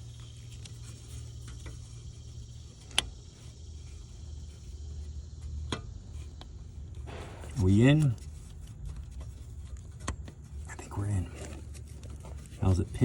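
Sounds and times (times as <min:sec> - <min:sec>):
low steady hum: 0:00.0 - 0:13.0.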